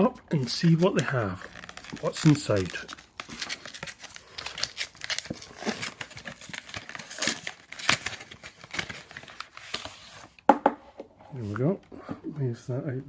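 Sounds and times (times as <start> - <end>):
plastic wrap crinkling: 0.3 - 10.3.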